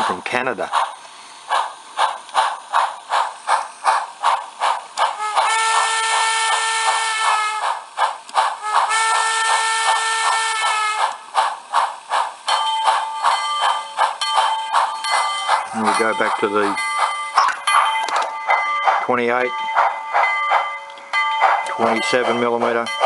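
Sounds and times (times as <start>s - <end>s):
steam locomotive chuffs: 0.0s - 23.0s.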